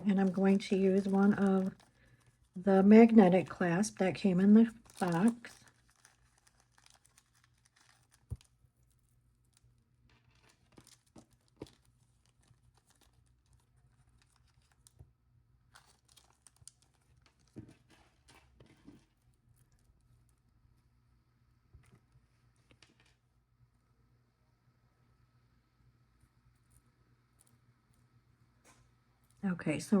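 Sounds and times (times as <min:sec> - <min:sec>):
plastic bags crinkling: 0:00.0 - 0:20.4.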